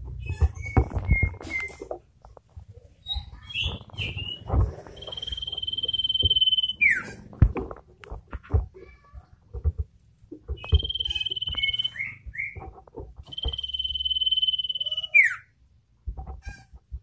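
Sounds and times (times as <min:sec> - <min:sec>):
bird chirping and trilling: 0:03.0 - 0:07.3, 0:10.5 - 0:15.5.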